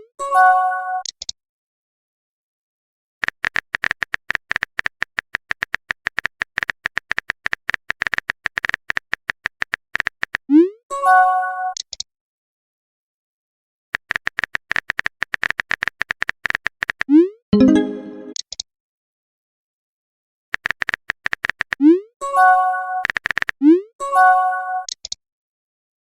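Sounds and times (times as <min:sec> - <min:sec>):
high blips: 0:17.6 - 0:18.4
short bright chime: 0:17.6 - 0:18.4.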